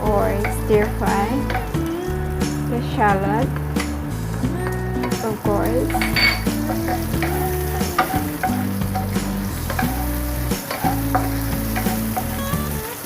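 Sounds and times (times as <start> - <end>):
shallots sizzling in oil: 0.0 - 13.0
utensil clicking against pan: 0.2 - 1.9, 4.6 - 12.7.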